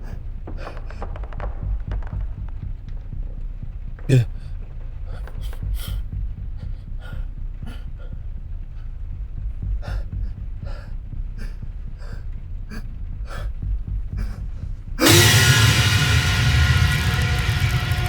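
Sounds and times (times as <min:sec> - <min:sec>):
low rumble: 0:15.0 - 0:18.0.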